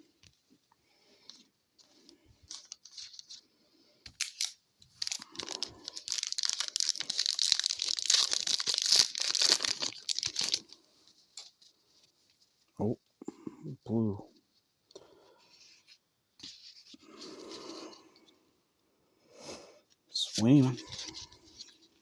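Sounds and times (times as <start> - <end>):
wrapper tearing and crinkling: 4.2 - 10.8.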